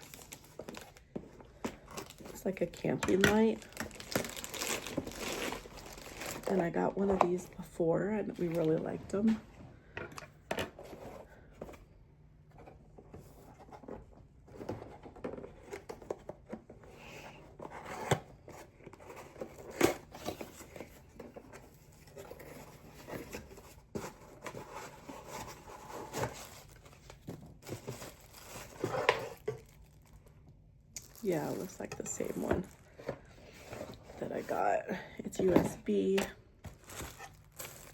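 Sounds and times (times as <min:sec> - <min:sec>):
packaging rustling and tearing: 0:00.0 - 0:07.4, 0:17.5 - 0:30.4, 0:31.0 - 0:34.7, 0:35.9 - 0:37.9.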